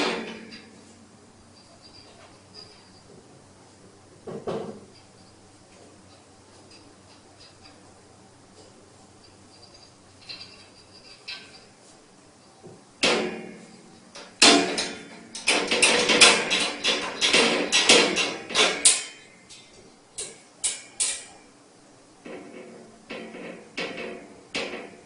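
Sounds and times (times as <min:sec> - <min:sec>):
sharp knocks and rattling bangs: 0:00.0 - 0:00.8, 0:04.2 - 0:05.3, 0:12.7 - 0:21.5, 0:22.2 - 0:25.0.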